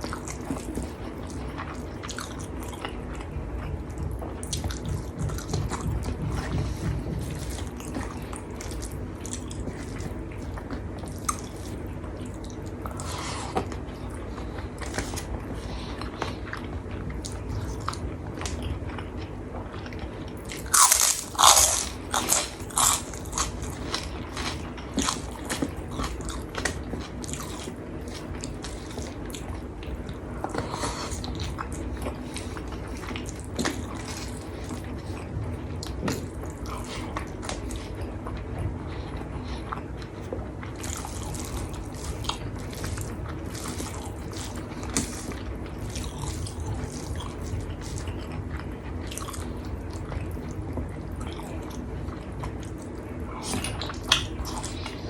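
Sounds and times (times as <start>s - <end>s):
chewing with small crunches: 0.0s - 55.0s
loud crunching of crackers: 20.3s - 35.2s.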